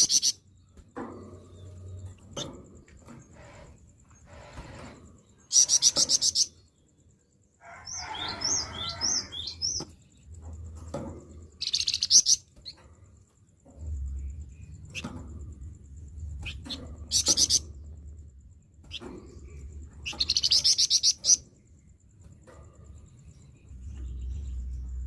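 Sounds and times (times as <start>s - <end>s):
bird rattling calls: 5.4s - 6.6s, 16.4s - 17.8s, 20.0s - 21.5s.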